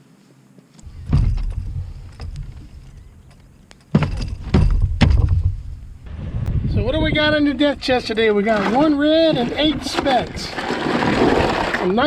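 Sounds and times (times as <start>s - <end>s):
low uneven rumble: 0.8s - 12.0s
gear knocking on kayak: 8.4s - 11.9s.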